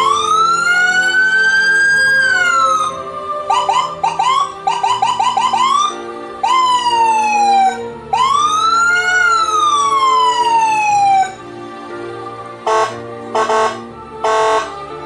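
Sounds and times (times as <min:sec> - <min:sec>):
electronic siren wailing: 0:00.0 - 0:11.4, 0:12.7 - 0:14.8
buzzing horn blast: 0:12.6 - 0:15.0.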